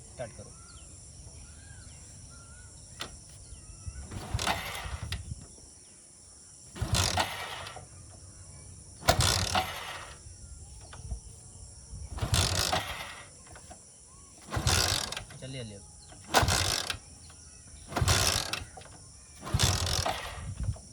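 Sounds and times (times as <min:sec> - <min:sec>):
motorcycle kick-starter ratcheting: 0:02.9 - 0:05.6, 0:06.7 - 0:11.4, 0:12.0 - 0:20.9.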